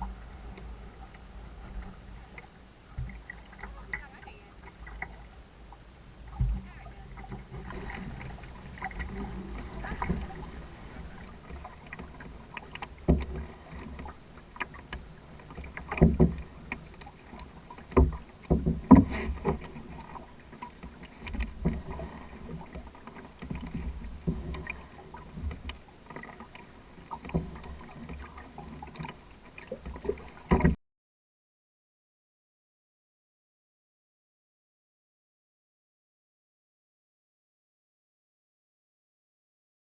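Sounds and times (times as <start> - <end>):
water sounds: 0.0 - 30.8
sharp knocks on canoe: 8.8 - 17.0, 17.8 - 24.8, 29.8 - 30.8.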